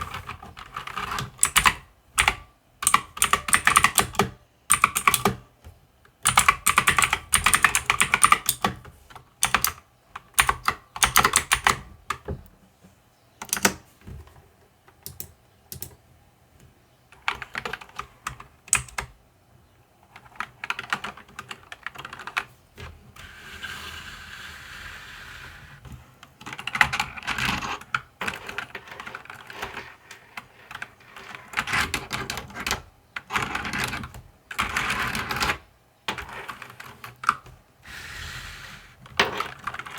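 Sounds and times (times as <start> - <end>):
mechanical keyboard typing: 0.0 - 5.5, 6.2 - 12.3, 13.4 - 13.8, 15.0 - 16.0, 17.2 - 19.2, 20.1 - 22.5.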